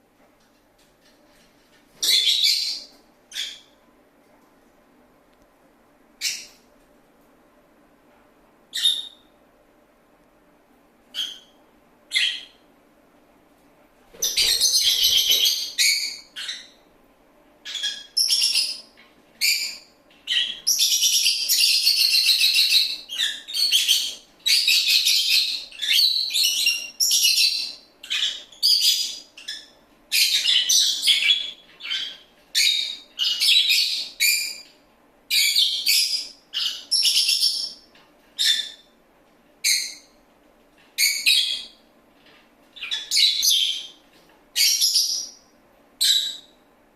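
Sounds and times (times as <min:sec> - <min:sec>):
lovebird chirping: 0:02.0 - 0:03.8, 0:06.2 - 0:06.6, 0:08.7 - 0:09.3, 0:11.1 - 0:12.6, 0:14.2 - 0:16.8, 0:17.6 - 0:34.7, 0:35.3 - 0:37.8, 0:41.0 - 0:41.8, 0:42.8 - 0:44.0, 0:44.6 - 0:45.4, 0:46.0 - 0:46.6.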